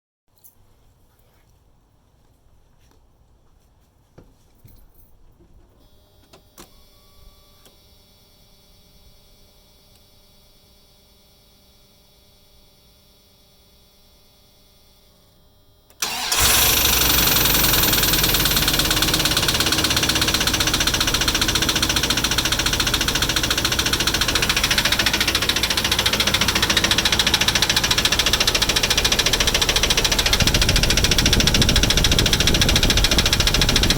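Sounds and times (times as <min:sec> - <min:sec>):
engine knocking: 0:16.0 - 0:33.9
truck engine starting: 0:16.0 - 0:33.9.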